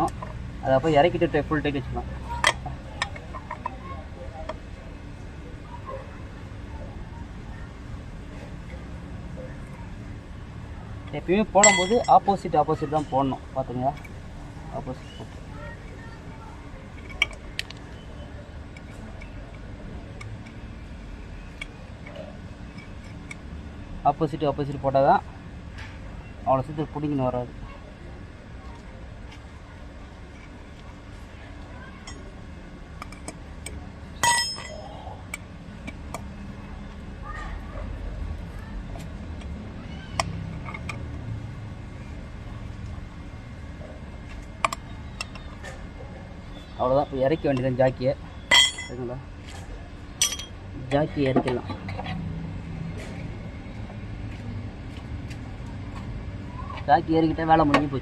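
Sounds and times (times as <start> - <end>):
spanner clinking on wheel nuts: 11.6 - 12.4, 33.0 - 36.0, 48.5 - 49.0, 50.2 - 50.6.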